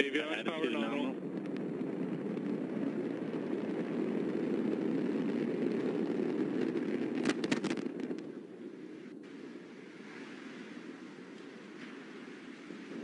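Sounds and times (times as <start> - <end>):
rocket engine roar: 0.0 - 13.0
sharp cracks: 5.2 - 8.4.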